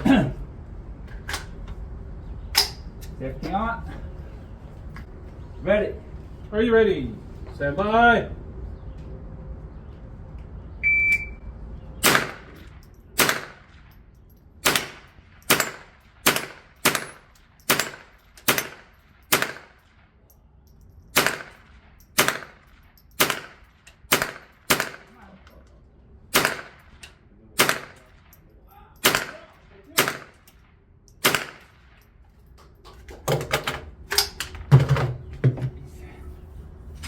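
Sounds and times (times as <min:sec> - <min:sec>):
shot timer beep: 0:10.8 - 0:11.4
gunshots: 0:12.0 - 0:13.9, 0:14.6 - 0:19.8, 0:21.1 - 0:25.4, 0:26.3 - 0:27.0, 0:27.6 - 0:28.4, 0:29.0 - 0:30.5, 0:31.2 - 0:32.0.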